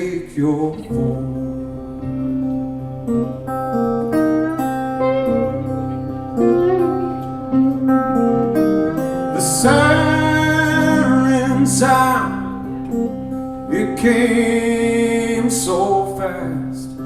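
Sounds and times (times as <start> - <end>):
guitar melody: 0.0 - 17.0
steady low bass: 0.7 - 17.0
live band playing: 1.6 - 13.7.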